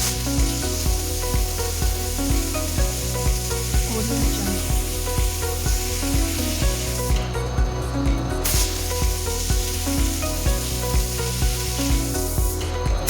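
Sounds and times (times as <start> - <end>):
background music with steady beat: 0.0 - 13.0
steady hiss: 0.0 - 13.0.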